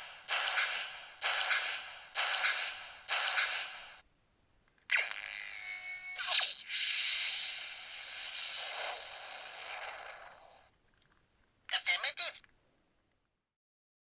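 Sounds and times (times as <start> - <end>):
hissing burst: 0.0 - 4.0, 6.2 - 10.6.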